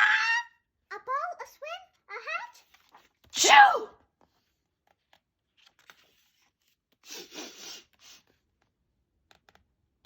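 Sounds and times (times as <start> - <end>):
paper page rustling: 2.2 - 3.3, 4.2 - 7.1.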